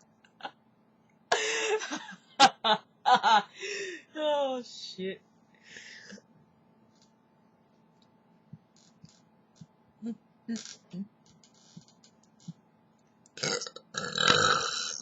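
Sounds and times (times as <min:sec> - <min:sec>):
faint irregular clicks: 0:11.2 - 0:13.4.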